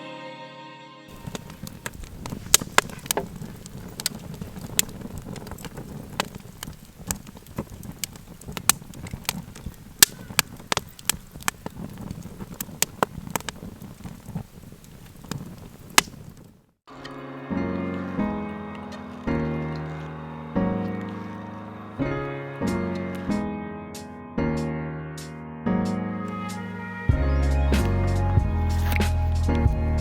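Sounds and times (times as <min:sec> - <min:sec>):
low rush of flame: 0:01.1 - 0:16.8
wood crackling and popping: 0:01.1 - 0:23.4, 0:26.3 - 0:30.0.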